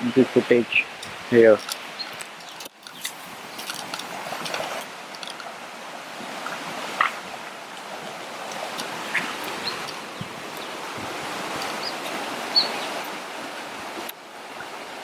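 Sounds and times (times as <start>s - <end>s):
water rushing: 0.0s - 15.0s.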